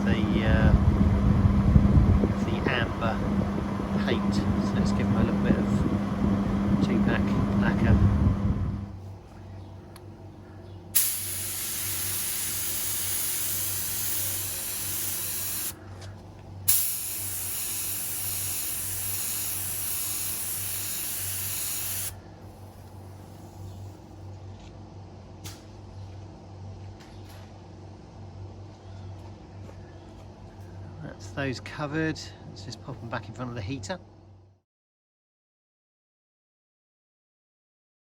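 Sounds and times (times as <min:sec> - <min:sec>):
steady low hum: 0:00.0 - 0:34.6
spray gun hissing: 0:11.0 - 0:15.8, 0:16.7 - 0:23.6.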